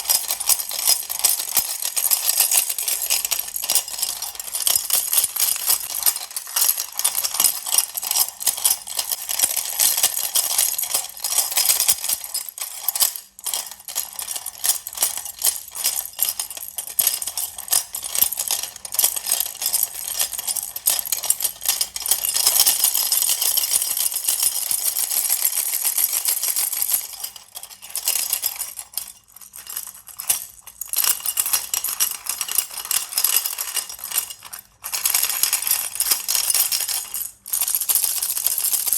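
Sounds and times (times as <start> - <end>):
baby rattle shaken: 0.0 - 38.9.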